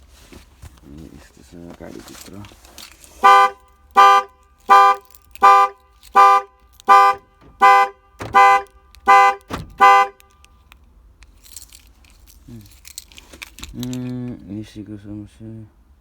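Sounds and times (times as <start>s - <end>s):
van horn honking: 3.1s - 10.5s.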